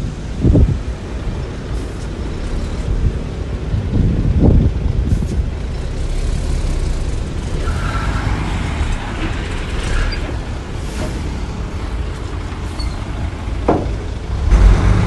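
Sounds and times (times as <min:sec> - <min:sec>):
diesel machinery rumbling: 0:00.0 - 0:15.0
faint high squeals: 0:12.7 - 0:13.1.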